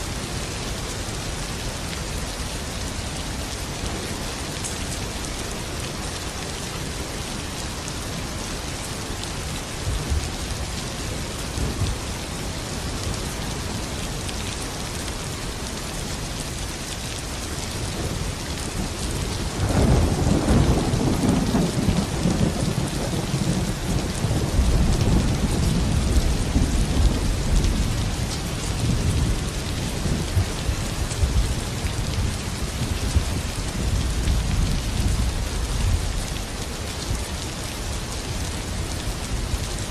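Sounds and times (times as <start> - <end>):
steady rain falling: 0.0 - 39.9
thunder rumbling: 19.2 - 35.2.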